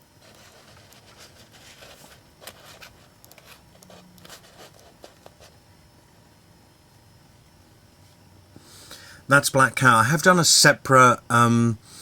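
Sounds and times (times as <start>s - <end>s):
plastic figure scraping and clicking: 0.2s - 5.5s.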